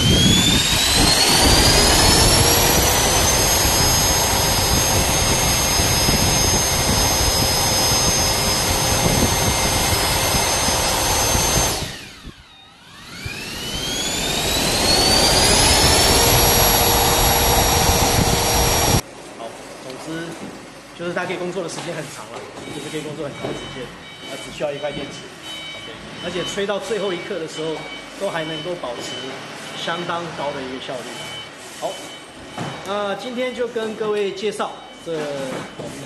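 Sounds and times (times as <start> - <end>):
ducted-fan blower whining: 0.0 - 19.1.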